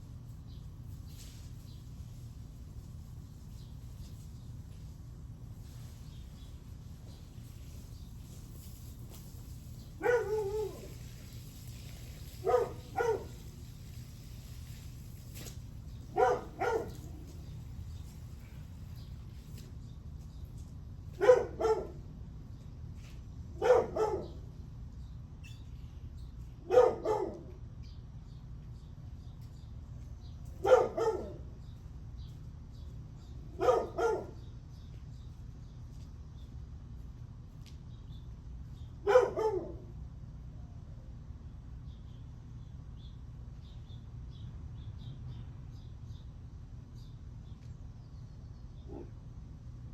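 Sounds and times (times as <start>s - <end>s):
small birds chirping faintly: 0.0s - 39.8s
dog barking: 10.0s - 11.0s, 12.4s - 13.4s, 16.1s - 17.1s, 21.2s - 22.0s, 23.6s - 24.4s, 26.6s - 27.6s, 30.6s - 31.5s, 33.5s - 34.4s, 39.0s - 39.9s.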